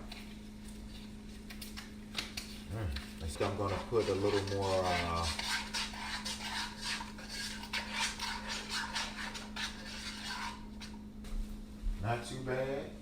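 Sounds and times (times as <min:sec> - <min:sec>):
steady low hum: 0:00.0 - 0:13.0
rasping scrapes in a pot: 0:02.4 - 0:11.0.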